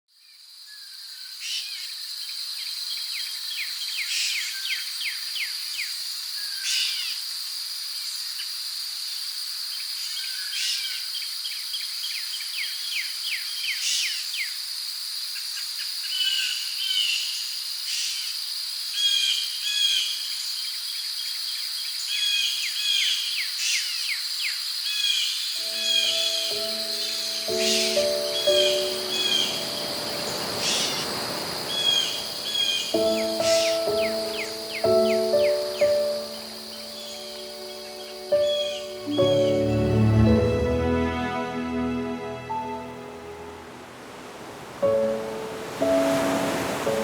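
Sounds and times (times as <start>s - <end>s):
high-pitched insect drone: 25.6s - 39.6s
birds chirping: 25.6s - 40.4s, 43.4s - 47.0s.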